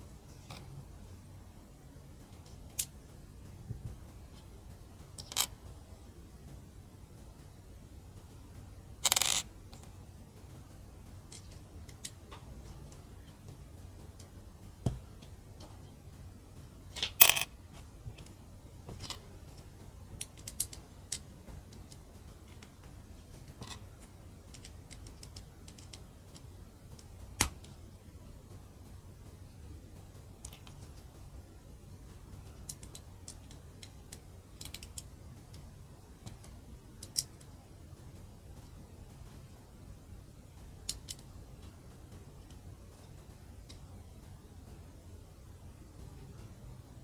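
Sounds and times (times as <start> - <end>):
low room hum: 0.0 - 47.0
plastic bricks clicking together: 9.0 - 9.9, 16.9 - 17.5, 20.2 - 22.0, 32.6 - 35.1, 36.3 - 37.4
plastic building bricks clicking: 9.0 - 9.9, 11.3 - 13.0, 19.0 - 22.8, 23.4 - 27.7, 32.6 - 35.6, 36.2 - 37.5.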